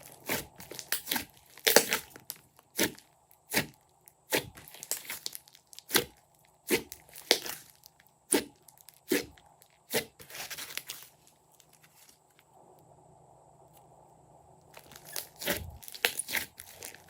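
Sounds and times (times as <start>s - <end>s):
sticky slime pops and crackles: 0.2s - 9.2s.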